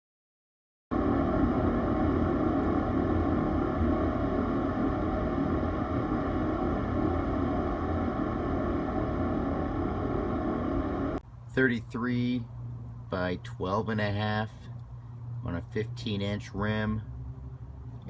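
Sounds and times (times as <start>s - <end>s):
air compressor running: 0.9s - 11.3s.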